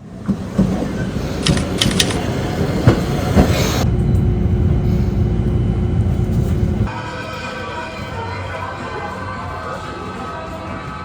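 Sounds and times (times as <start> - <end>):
rail vehicle rumble: 0.0 - 11.0
wheel clacks: 1.4 - 2.3.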